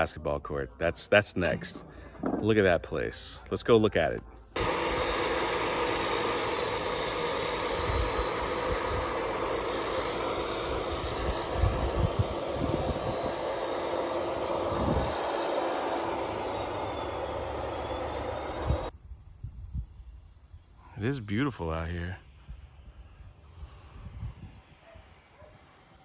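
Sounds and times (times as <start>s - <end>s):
road noise: 14.6s - 18.9s
vehicle engine running: 16.1s - 18.9s.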